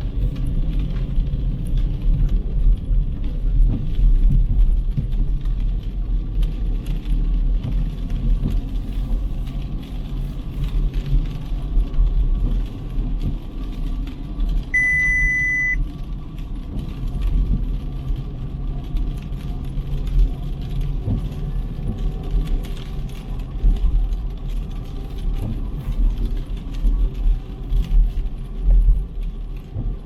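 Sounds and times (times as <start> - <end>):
city street traffic rumbling: 0.0 - 30.0
electronic beep: 14.8 - 15.8.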